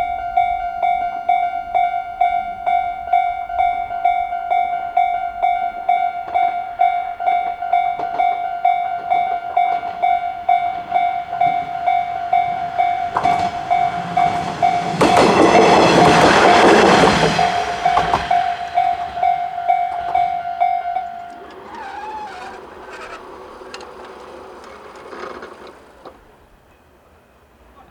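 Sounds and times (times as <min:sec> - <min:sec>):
diesel railcar passing: 0:00.0 - 0:27.9
level crossing bell ringing: 0:00.1 - 0:25.9.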